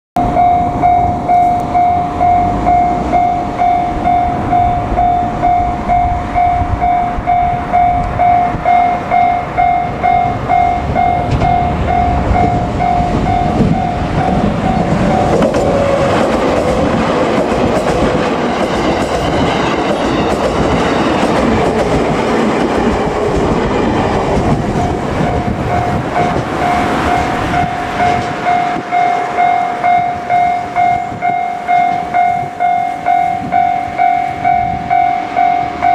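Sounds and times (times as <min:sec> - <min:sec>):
electric train passing: 0:00.2 - 0:35.9
level-crossing warning bell: 0:00.2 - 0:35.9
wheels clattering over rail joints: 0:09.6 - 0:32.7.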